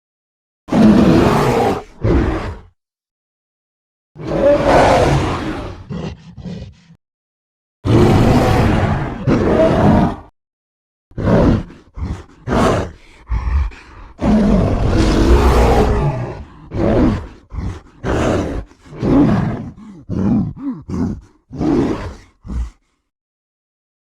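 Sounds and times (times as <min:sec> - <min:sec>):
creature roaring: 0:00.7 - 0:02.7, 0:04.2 - 0:07.0, 0:07.8 - 0:10.3, 0:11.2 - 0:22.9
creature growls and grunts: 0:00.7 - 0:02.8, 0:04.2 - 0:07.0, 0:07.8 - 0:10.3, 0:11.1 - 0:23.1.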